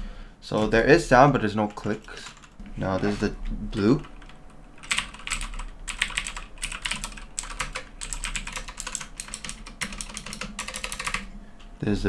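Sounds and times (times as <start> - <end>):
clicky mechanical keyboard typing: 1.5 - 11.3.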